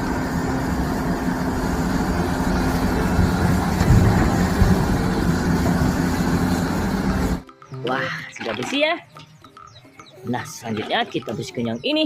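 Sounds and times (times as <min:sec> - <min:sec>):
water spraying: 0:00.0 - 0:07.4
pressure washer motor humming: 0:00.0 - 0:07.6.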